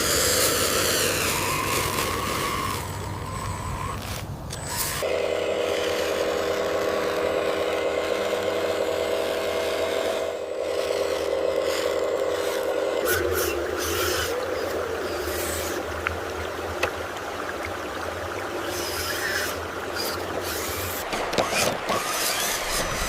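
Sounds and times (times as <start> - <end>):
toy excavator motor whining: 0.0 - 16.0, 18.6 - 23.0
soil and gravel scraping: 18.7 - 23.0.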